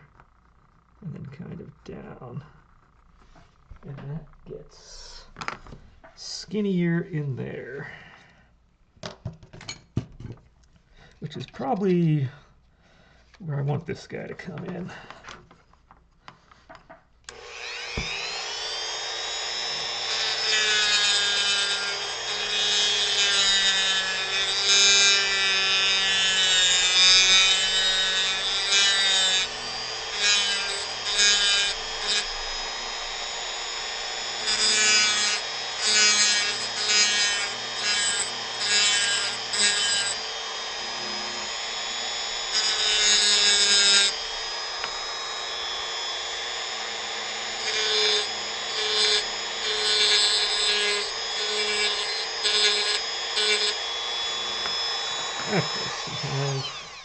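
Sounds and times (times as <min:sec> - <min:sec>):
rotary tool grinding wood: 0:17.3 - 0:57.0.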